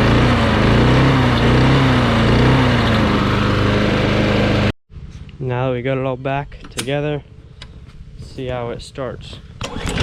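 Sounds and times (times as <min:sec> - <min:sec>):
lawn mower engine running: 0:00.0 - 0:04.7, 0:09.3 - 0:10.0.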